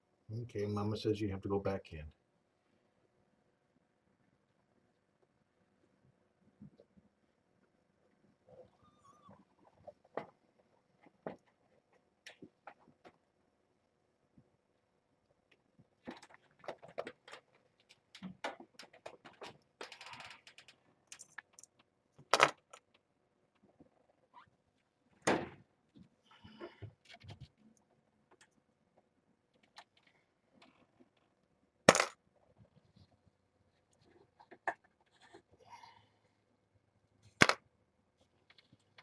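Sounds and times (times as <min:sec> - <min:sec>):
clicks and knocks of handling: 0:15.5 - 0:23.8.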